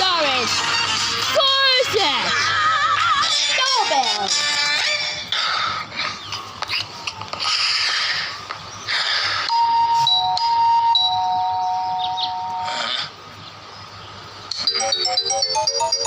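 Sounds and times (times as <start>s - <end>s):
electronic doorbell chime: 9.5s - 12.7s, 14.6s - 16.0s.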